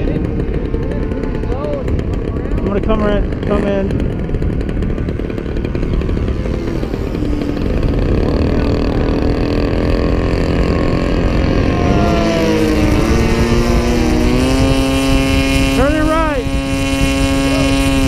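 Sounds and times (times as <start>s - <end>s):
model airplane engine in flight: 0.0s - 18.0s
steady low rumble: 0.0s - 18.0s.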